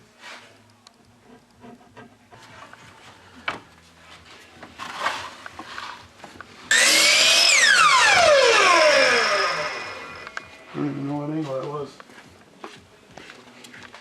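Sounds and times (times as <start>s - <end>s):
electric power saw whine: 6.7s - 10.5s.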